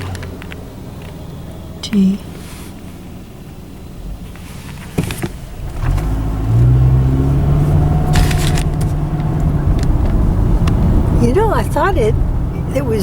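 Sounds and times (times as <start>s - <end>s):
car engine hum: 0.0s - 13.0s
road noise inside car: 0.0s - 13.0s.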